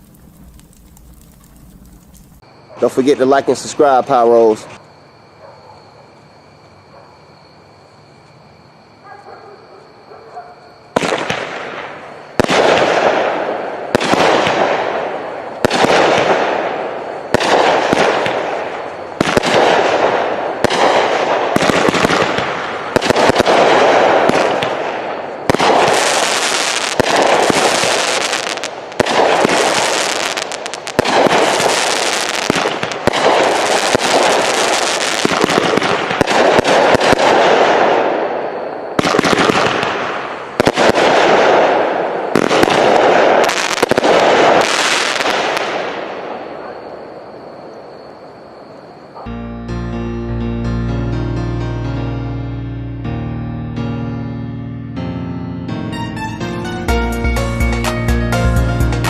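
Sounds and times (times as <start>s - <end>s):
firework shots banging: 10.9s - 38.4s, 39.0s - 46.7s.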